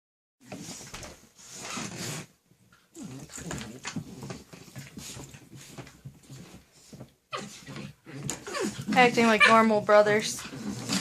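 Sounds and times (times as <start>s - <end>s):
puppy vocal noises: 0.4s - 11.0s
puppies scuffling: 2.6s - 11.0s.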